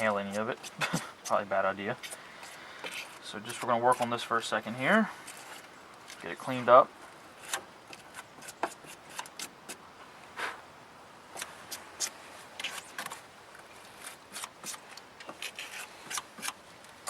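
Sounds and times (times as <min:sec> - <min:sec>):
wire brush scraping metal: 0:13.9 - 0:16.6.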